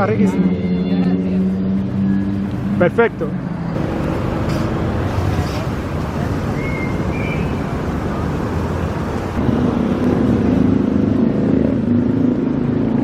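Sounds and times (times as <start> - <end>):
car engines running: 0.0 - 13.0
high squeal: 6.4 - 7.8.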